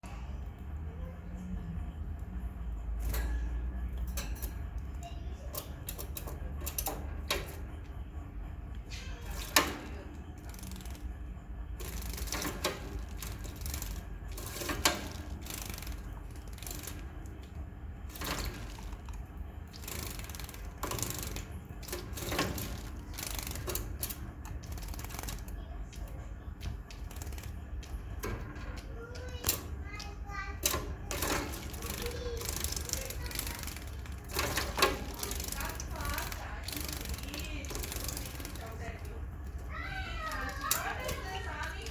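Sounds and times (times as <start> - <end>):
birds splashing water: 11.8 - 28.0, 31.2 - 41.9.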